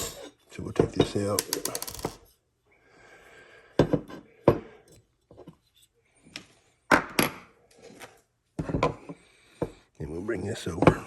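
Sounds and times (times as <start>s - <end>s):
sharp knocks and clicks of parts: 0.0s - 2.2s.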